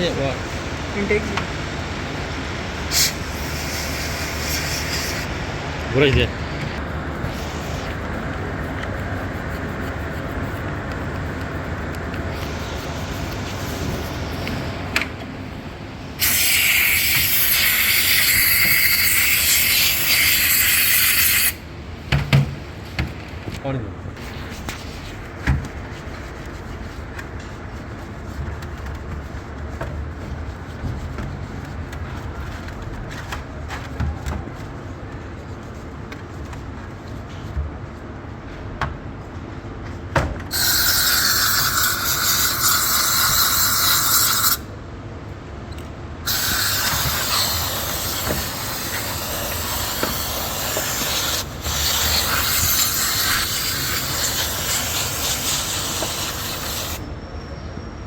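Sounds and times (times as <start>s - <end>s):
high-pressure cleaning jet hissing: 2.9s - 5.4s, 7.3s - 8.0s, 16.2s - 21.6s, 40.5s - 44.6s, 46.3s - 57.0s.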